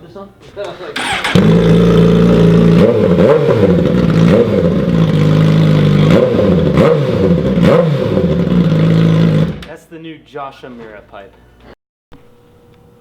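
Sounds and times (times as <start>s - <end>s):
motorcycle engine idling and revving: 1.0s - 9.6s.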